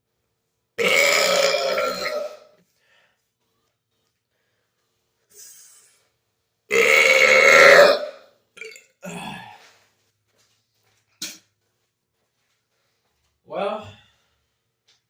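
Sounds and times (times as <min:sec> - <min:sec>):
man burping loudly: 0:00.8 - 0:02.5, 0:06.7 - 0:09.6.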